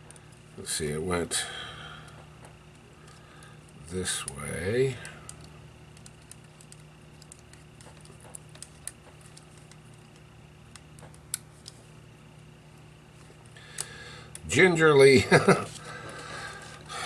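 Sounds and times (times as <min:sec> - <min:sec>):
steady low hum: 0:00.0 - 0:17.0
small parts clicking and tapping: 0:02.0 - 0:11.9, 0:12.7 - 0:14.5.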